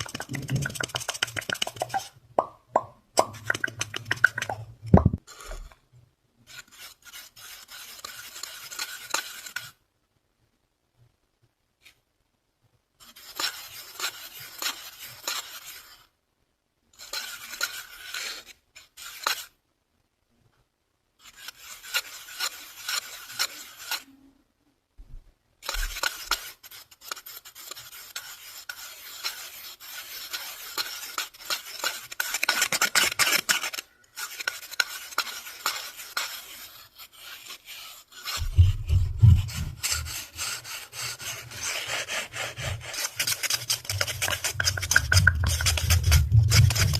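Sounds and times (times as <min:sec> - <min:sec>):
scratching and rubbing: 0:00.0 - 0:02.2, 0:03.2 - 0:05.8, 0:06.5 - 0:09.8, 0:13.0 - 0:16.1, 0:17.0 - 0:19.5, 0:21.2 - 0:24.1, 0:25.6 - 0:46.9
deep heavy rub: 0:38.3 - 0:40.6, 0:42.1 - 0:46.9.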